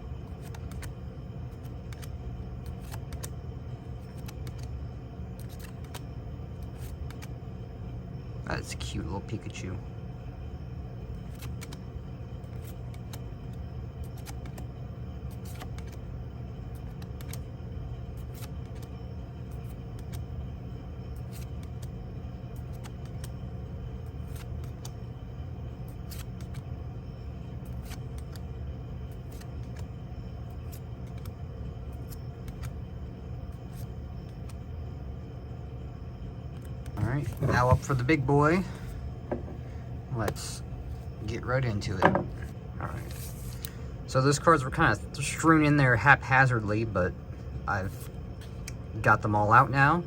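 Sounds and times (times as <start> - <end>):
steady low hum: 0.0 - 50.0
trading cards being handled: 0.2 - 7.4, 11.2 - 14.7, 15.3 - 16.0, 18.2 - 20.3, 21.1 - 25.1, 25.8 - 26.7, 27.5 - 34.6, 36.5 - 41.1, 41.8 - 43.8.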